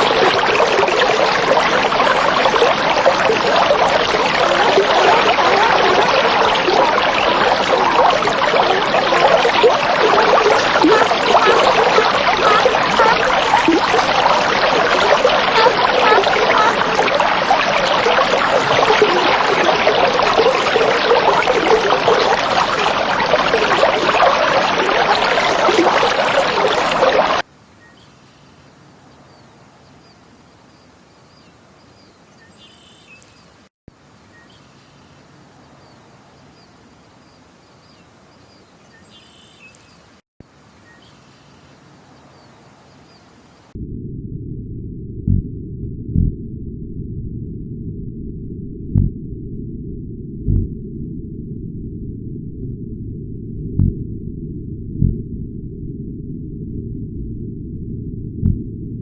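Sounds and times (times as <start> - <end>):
running water rushing: 0.0 - 27.5.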